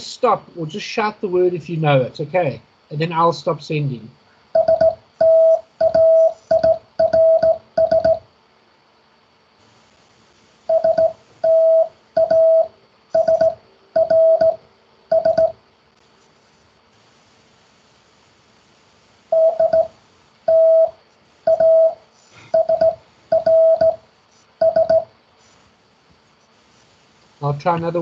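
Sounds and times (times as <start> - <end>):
morse code tone: 4.6 - 8.2, 10.7 - 15.6, 19.3 - 19.9, 20.5 - 22.0, 22.6 - 24.0, 24.6 - 25.1.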